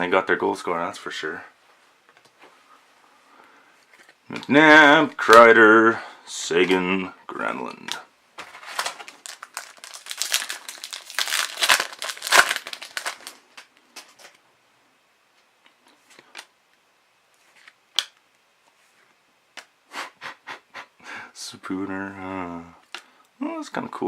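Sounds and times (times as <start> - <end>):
foil wrapper crinkling: 8.4 - 14.4.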